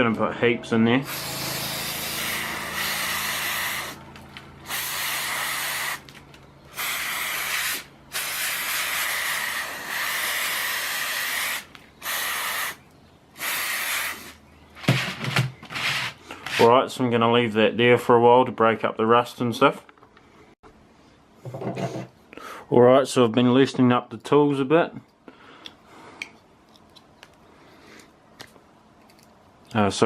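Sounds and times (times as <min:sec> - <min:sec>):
aerosol can spraying: 0:01.0 - 0:04.0, 0:04.6 - 0:12.8, 0:13.4 - 0:16.6.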